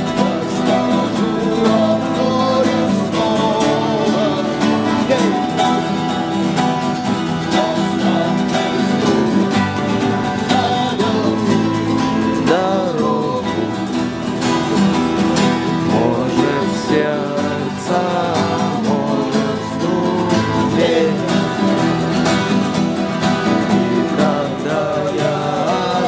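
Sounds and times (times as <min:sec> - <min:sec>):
acoustic guitar strumming: 0:00.0 - 0:26.0
person singing: 0:00.0 - 0:26.0.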